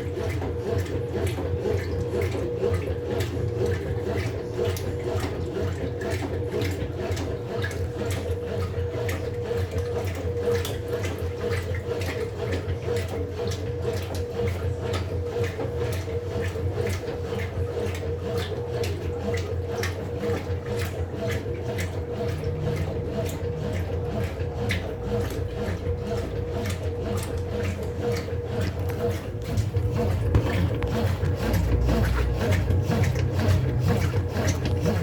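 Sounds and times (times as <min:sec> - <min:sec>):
washing machine motor hum: 0:00.0 - 0:35.0
water sloshing: 0:19.3 - 0:35.0.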